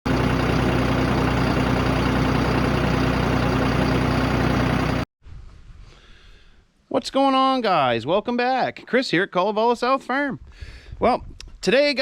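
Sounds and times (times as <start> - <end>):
engine running steadily: 0.0 - 5.1.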